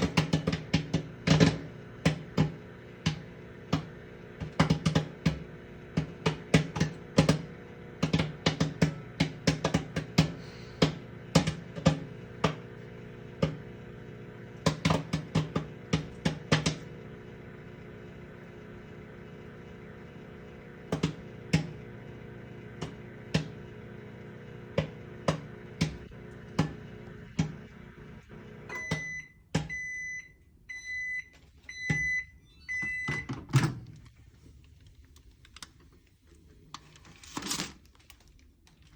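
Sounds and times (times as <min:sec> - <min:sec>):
popcorn popping: 0:00.0 - 0:18.0, 0:20.6 - 0:27.8
microwave oven hum: 0:00.0 - 0:38.9
microwave beeps: 0:16.6 - 0:33.8.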